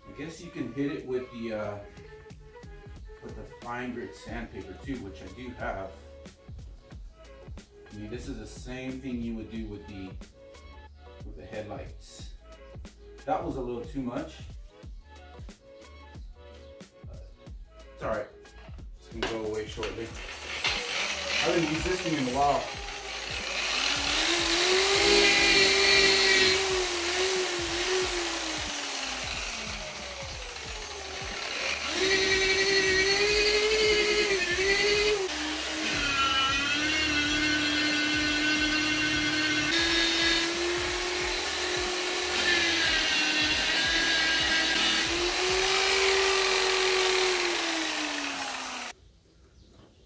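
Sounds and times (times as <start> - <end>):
electric polisher motor whine: 20.1 - 48.9.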